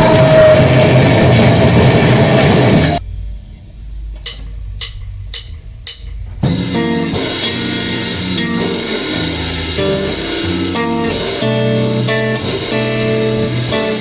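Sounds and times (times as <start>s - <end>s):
loud guitar chords and drums: 0.0s - 3.0s, 6.4s - 14.0s.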